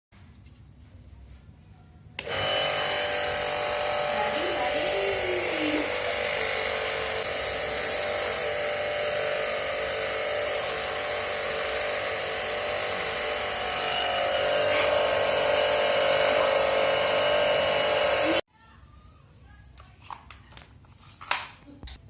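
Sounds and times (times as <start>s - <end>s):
jet cleaner motor and pump: 2.2s - 18.4s.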